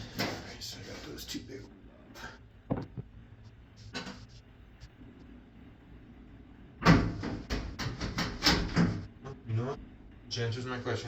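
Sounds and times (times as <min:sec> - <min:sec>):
knock: 0:02.7 - 0:03.0.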